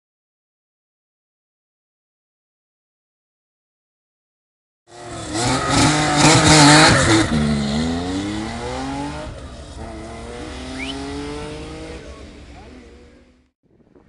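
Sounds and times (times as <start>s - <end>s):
rally car passing at full throttle: 4.9s - 13.5s.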